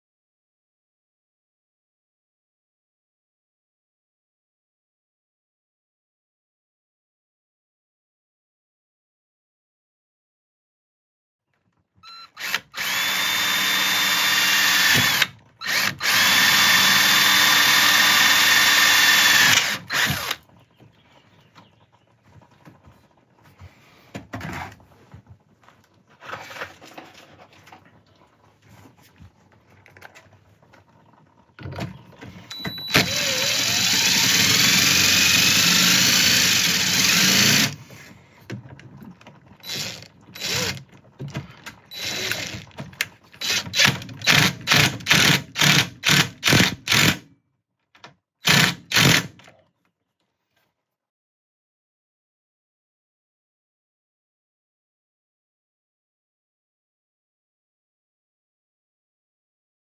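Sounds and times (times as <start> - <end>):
power drill whining: 12.0 - 20.4, 32.4 - 37.8, 39.6 - 40.9, 41.9 - 42.7, 43.4 - 47.2, 48.4 - 49.4.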